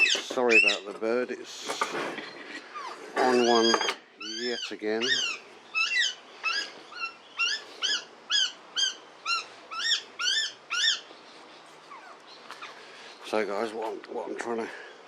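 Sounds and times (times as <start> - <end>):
parrot calling: 0.0 - 0.8, 2.6 - 11.1, 11.8 - 12.8.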